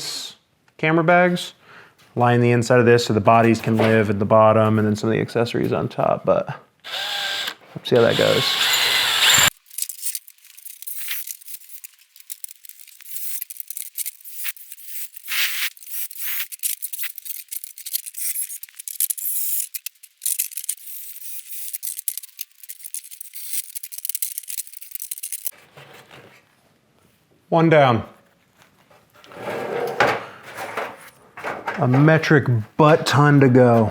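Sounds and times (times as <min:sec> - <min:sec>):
metallic scraping and rattling: 0:08.0 - 0:25.6.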